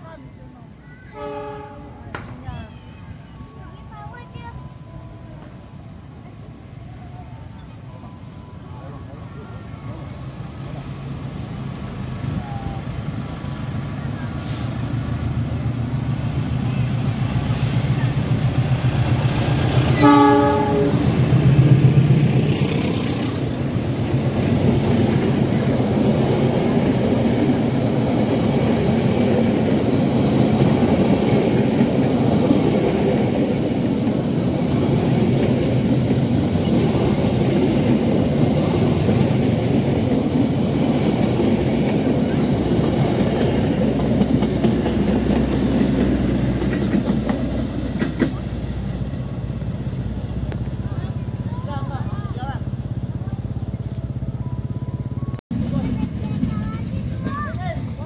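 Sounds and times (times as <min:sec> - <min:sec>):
train rumbling past: 0:00.0 - 0:58.0
train horn blast: 0:01.2 - 0:02.0, 0:19.9 - 0:21.2
wheels clattering on rails: 0:17.0 - 0:58.0.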